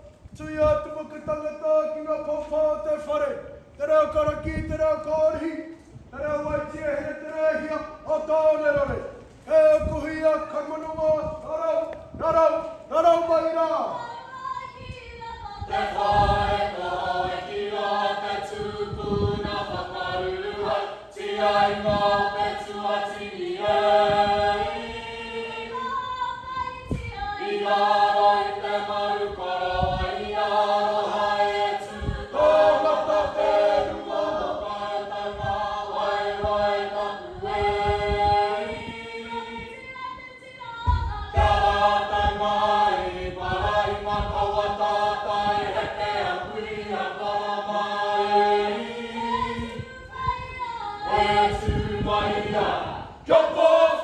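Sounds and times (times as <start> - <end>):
choir singing a cappella: 13.7 - 54.0.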